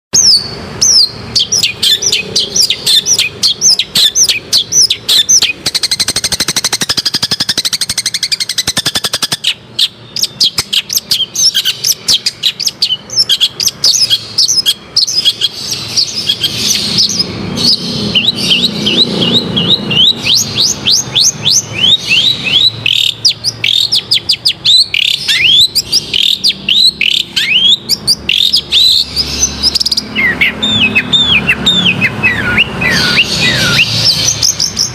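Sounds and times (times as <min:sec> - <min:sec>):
bird chirping and whistling: 0:00.2 - 0:34.9.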